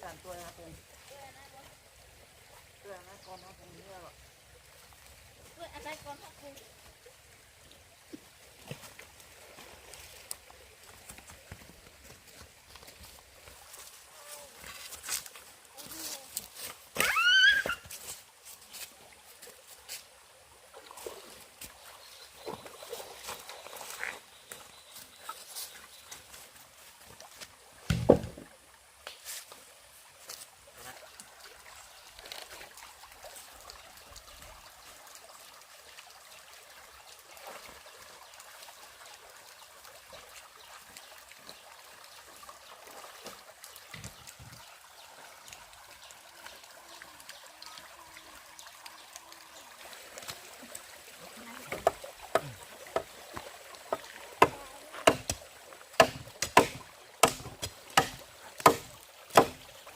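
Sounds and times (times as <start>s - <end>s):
faint stream-like rush: 0.0s - 59.9s
sharp evenly spaced knocks: 53.9s - 55.4s, 56.0s - 59.6s.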